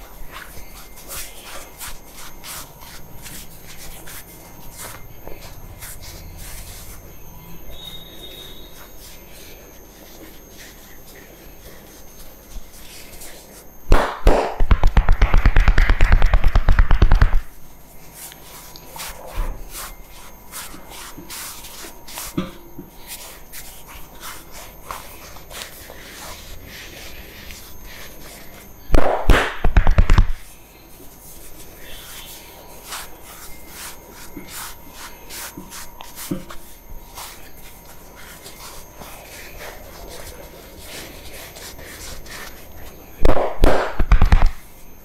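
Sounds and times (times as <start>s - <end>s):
rubbing of hair and skin: 0.0s - 13.8s, 14.8s - 28.9s, 29.9s - 43.2s
rhythmic slapping on head: 11.8s - 30.5s, 31.2s - 44.6s.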